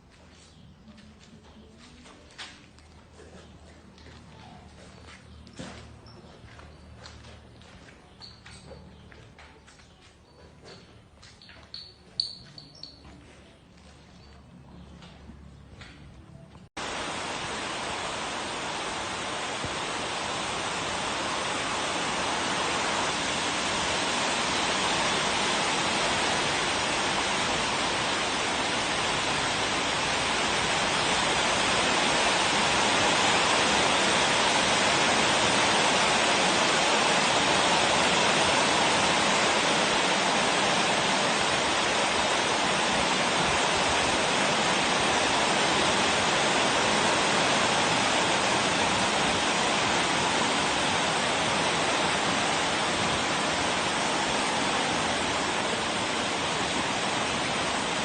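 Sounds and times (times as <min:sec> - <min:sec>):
steady rushing hiss: 0:16.7 - 0:58.0.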